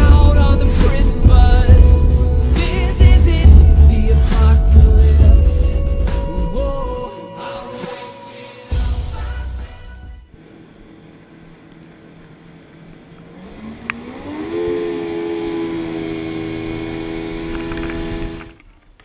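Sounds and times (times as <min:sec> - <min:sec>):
jet ski engine revving: 0:11.4 - 0:18.6.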